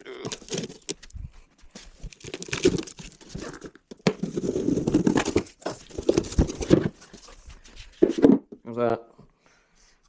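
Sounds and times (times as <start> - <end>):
cardboard and packaging tearing: 0.0 - 1.1, 1.9 - 7.2.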